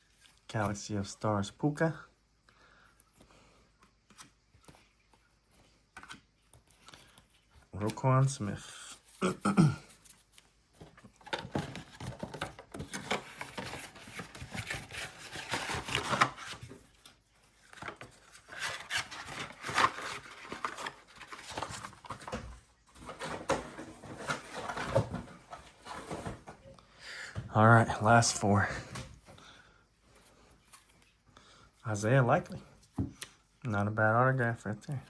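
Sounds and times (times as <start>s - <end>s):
cards rustling and sliding: 2.9s - 9.2s, 9.9s - 22.4s.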